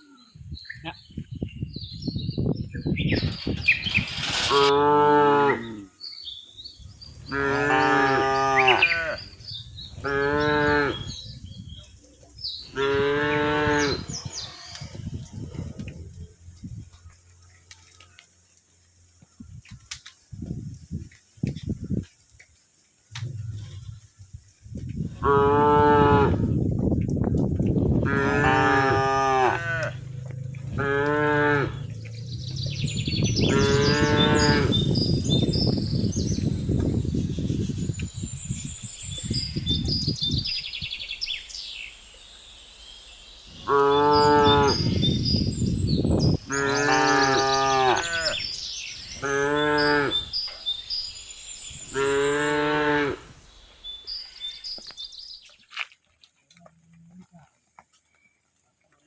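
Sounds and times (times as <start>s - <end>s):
cattle mooing: 4.4s - 5.9s, 7.2s - 9.2s, 25.2s - 26.5s, 28.0s - 34.9s, 46.5s - 48.4s, 49.2s - 50.3s, 51.9s - 53.2s.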